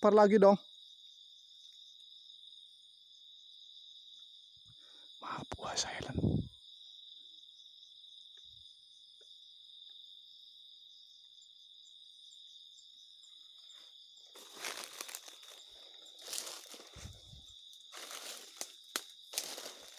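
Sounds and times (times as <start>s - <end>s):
crickets and insects trilling: 0.0s - 19.9s
rustling and crunching leaves: 14.3s - 19.9s.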